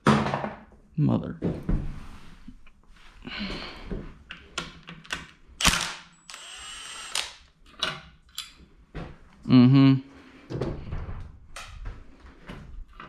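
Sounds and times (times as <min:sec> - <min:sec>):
tools and metal parts clinking: 0:07.7 - 0:08.6.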